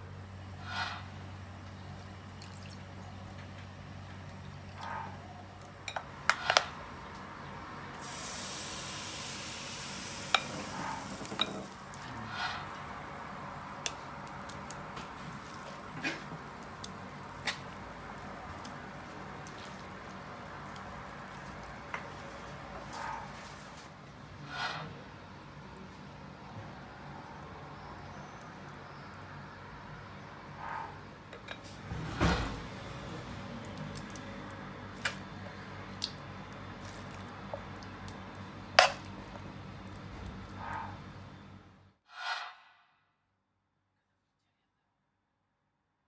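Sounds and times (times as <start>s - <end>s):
steady hiss: 8.0s - 22.8s
utensils and dishes clicking: 10.3s - 13.1s.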